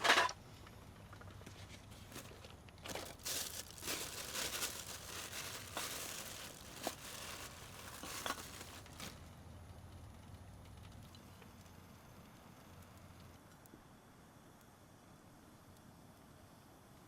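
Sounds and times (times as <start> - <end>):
packaging crinkling and rustling: 1.1 - 9.3.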